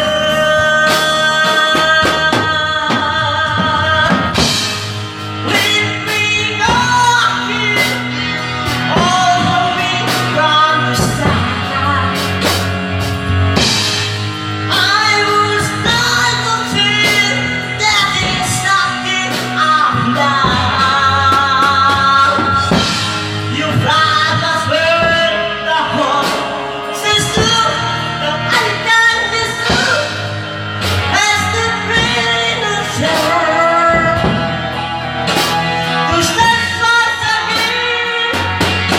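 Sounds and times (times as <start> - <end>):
pop song with singing: 0.0 - 38.9.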